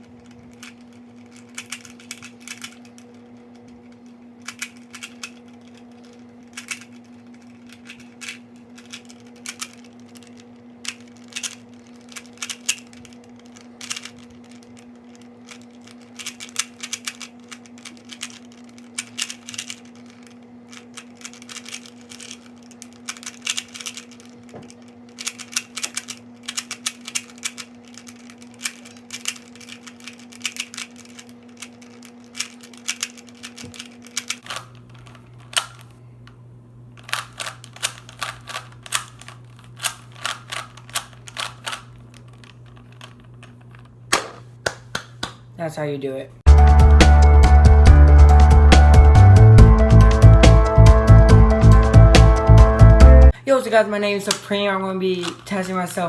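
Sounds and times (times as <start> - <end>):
puzzle cube plastic clicks: 0.0 - 3.2, 3.8 - 35.9, 37.0 - 44.4
steady low hum: 0.0 - 56.0.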